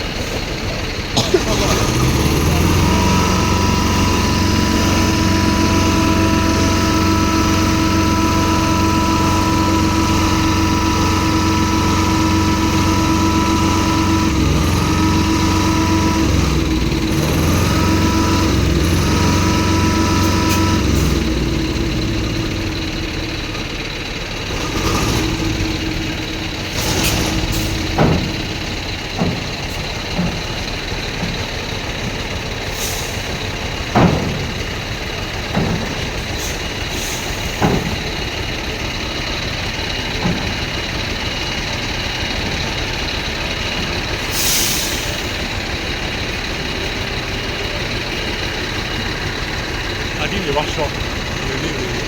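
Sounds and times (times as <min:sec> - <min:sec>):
heavy vehicle engine idling: 0:00.0 - 0:52.0
sharp knocks: 0:27.2 - 0:28.6.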